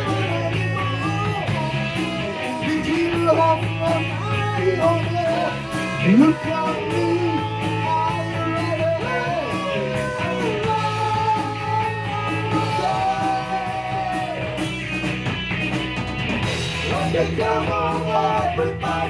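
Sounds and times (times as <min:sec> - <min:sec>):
electric guitar: 0:00.0 - 0:19.0
steady drum beat: 0:00.0 - 0:19.0
person singing: 0:02.5 - 0:14.6, 0:16.9 - 0:19.0.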